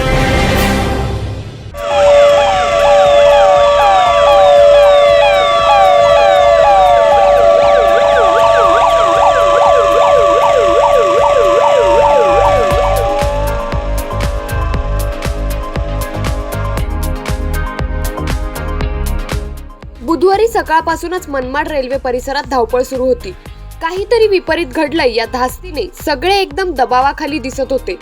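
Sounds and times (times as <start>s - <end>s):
short bit of music: 0.0s - 19.6s
sirens wailing: 1.8s - 18.3s.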